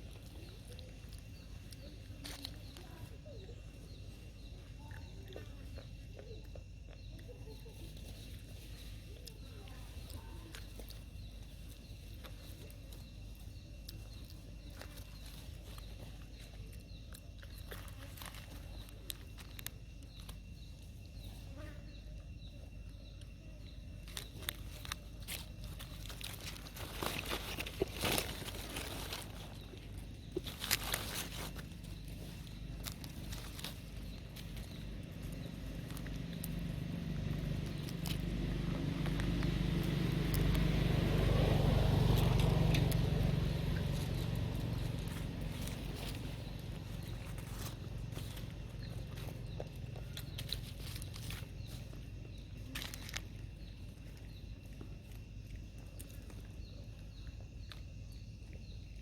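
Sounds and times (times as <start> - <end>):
rustling: 7.6 - 22.0, 23.7 - 56.4
vehicle passing by: 34.1 - 52.0.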